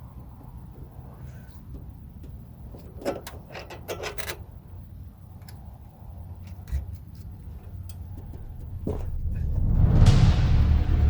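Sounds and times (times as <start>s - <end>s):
heavy steady bass: 8.2s - 11.0s
loud ringing hit: 9.2s - 11.0s
background music: 9.5s - 11.0s.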